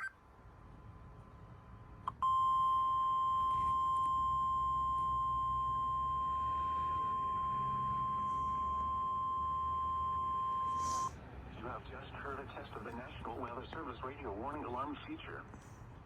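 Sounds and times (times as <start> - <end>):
steady high alarm tone: 2.2 - 10.9.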